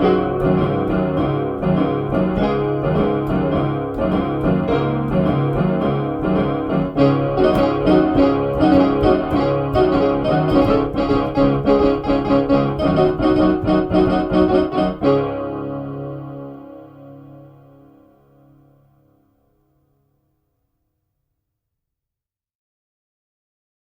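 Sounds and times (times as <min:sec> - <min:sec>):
electronic keyboard piano music: 0:00.0 - 0:19.1.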